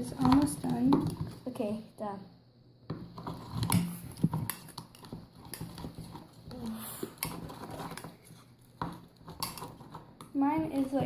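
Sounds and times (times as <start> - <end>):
utensil scraping bowl of slime: 0.0 - 1.7, 3.0 - 11.0.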